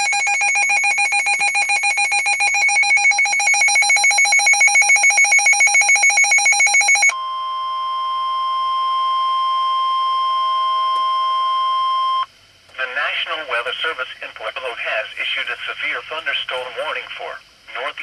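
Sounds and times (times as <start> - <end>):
pulsing electronic alarm: 0.0 - 12.3
long steady attention tone: 0.0 - 18.0.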